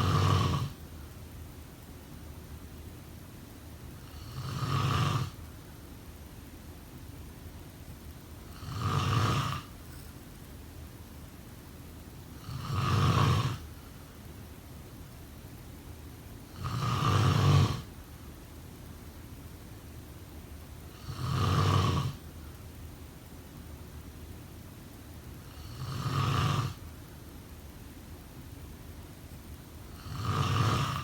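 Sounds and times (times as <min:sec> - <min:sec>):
person snoring: 0:00.0 - 0:00.8, 0:04.0 - 0:05.4, 0:08.5 - 0:09.7, 0:12.4 - 0:13.7, 0:16.6 - 0:17.9, 0:21.0 - 0:22.2, 0:25.5 - 0:26.8, 0:29.9 - 0:31.0.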